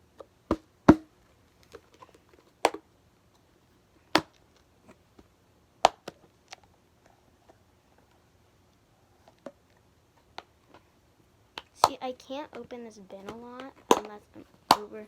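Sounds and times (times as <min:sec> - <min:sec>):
plastic bins and toys clicking: 0:11.6 - 0:15.0.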